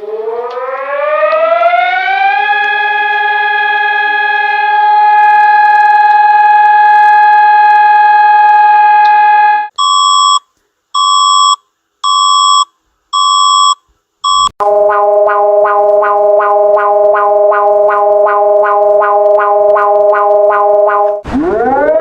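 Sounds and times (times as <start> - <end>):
steady siren tone: 0.0 - 9.7, 14.6 - 22.0
short electronic alarm beeps: 9.8 - 10.4, 11.0 - 14.5
rapidly pulsing alert tone: 14.6 - 22.0.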